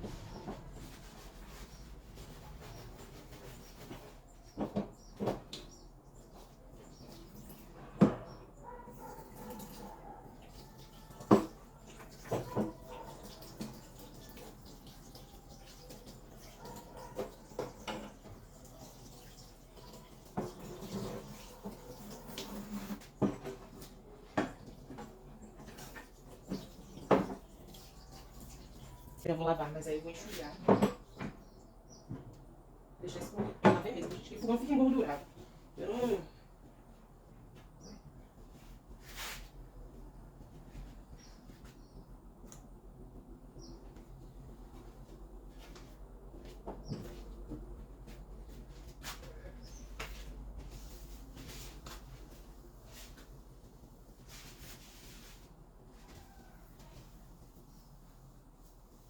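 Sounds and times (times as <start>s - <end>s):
faint background noise: 0.0s - 59.0s.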